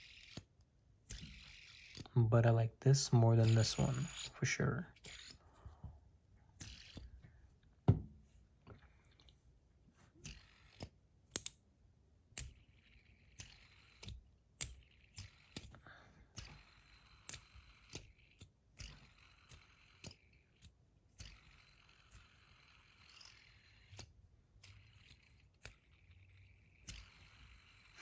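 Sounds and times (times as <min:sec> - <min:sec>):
whir of spinning bearings: 0:00.0 - 0:00.5, 0:01.1 - 0:02.1, 0:03.4 - 0:04.4, 0:05.0 - 0:05.4, 0:06.5 - 0:07.2, 0:10.2 - 0:11.0, 0:12.4 - 0:28.0
sharp metallic clicks: 0:11.3 - 0:11.6.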